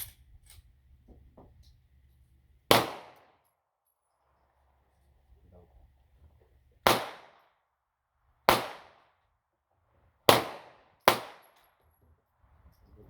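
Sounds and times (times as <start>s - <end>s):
gunshots: 6.9s - 7.3s, 8.5s - 9.0s, 10.3s - 11.5s.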